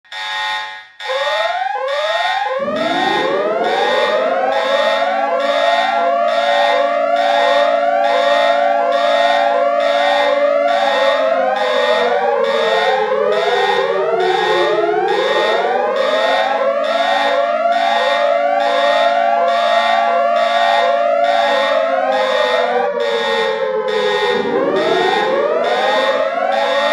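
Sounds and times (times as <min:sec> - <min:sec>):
rising and falling alarm sweeps: 0:00.1 - 0:26.9
low wailing siren tone: 0:01.0 - 0:26.9.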